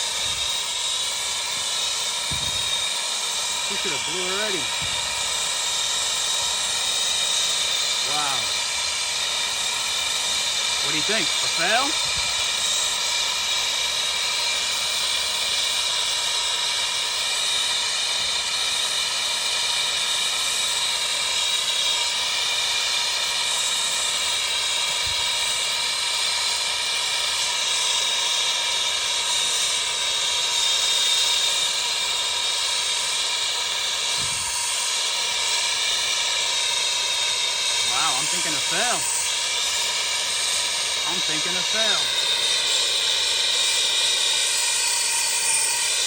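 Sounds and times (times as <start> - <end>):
gas flame hissing: 0.0 - 13.4, 33.7 - 36.4, 37.5 - 42.2.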